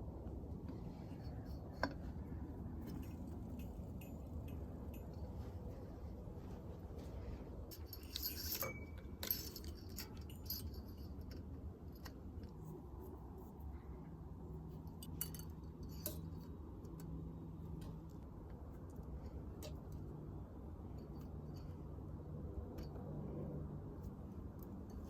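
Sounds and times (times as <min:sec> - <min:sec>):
metal tools clinking and jingling: 0:02.8 - 0:05.8, 0:07.7 - 0:12.2.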